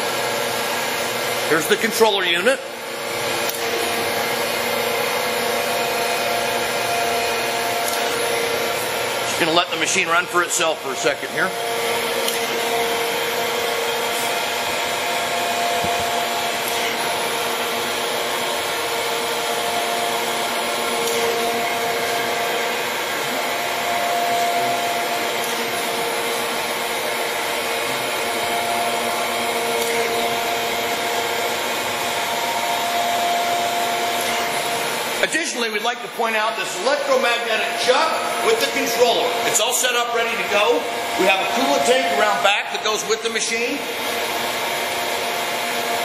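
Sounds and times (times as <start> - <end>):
surface grinder grinding steel: 0.0 - 46.0.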